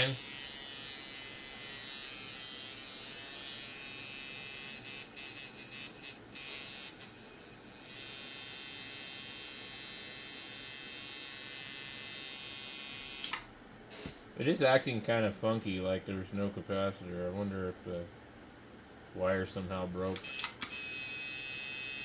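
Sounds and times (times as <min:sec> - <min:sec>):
tattoo machine buzzing: 0:00.0 - 0:13.5, 0:20.2 - 0:22.0.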